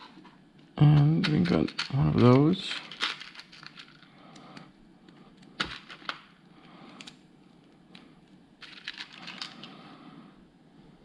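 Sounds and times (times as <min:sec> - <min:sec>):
plastic parts clicking together: 0:00.9 - 0:04.4.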